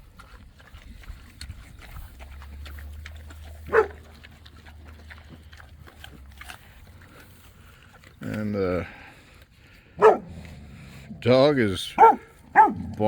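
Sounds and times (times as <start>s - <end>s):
dog barking: 3.7s - 4.0s, 10.0s - 10.3s, 12.0s - 12.8s.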